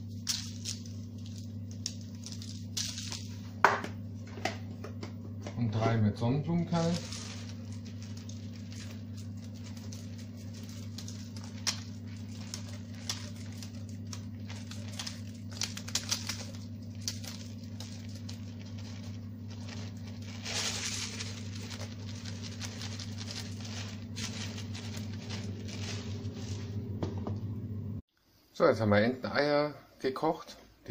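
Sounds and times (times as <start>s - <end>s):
seeds pattering and clicking: 0.0s - 3.4s, 6.8s - 27.0s
steady low hum: 0.0s - 30.0s.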